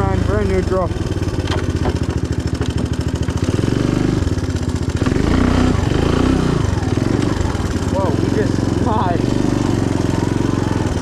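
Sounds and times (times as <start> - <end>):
small engine running: 0.0 - 11.0.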